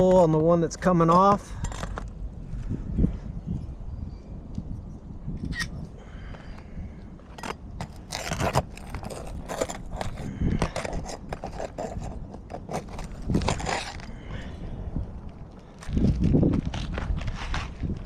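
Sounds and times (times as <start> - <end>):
shingles scraping and crackling: 7.3 - 14.5.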